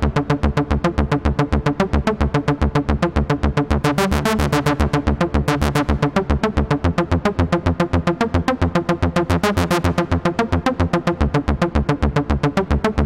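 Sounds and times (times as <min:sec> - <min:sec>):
pulsing synth bass: 0:00.0 - 0:13.0
staccato synthesizer notes: 0:03.4 - 0:06.9.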